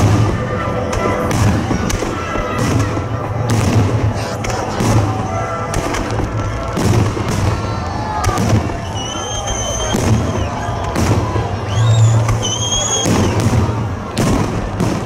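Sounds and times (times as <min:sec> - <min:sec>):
fireworks bangs and crackling: 0:00.0 - 0:15.0
low rumble of explosions: 0:00.0 - 0:15.0
high whistling tones: 0:07.4 - 0:13.5.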